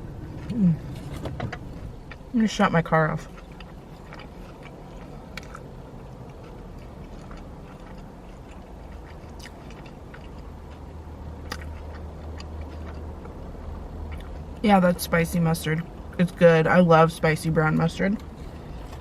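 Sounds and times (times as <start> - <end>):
low steady rumble: 0.0 - 19.0
person chewing food: 0.1 - 2.4, 3.2 - 14.6, 18.2 - 19.0.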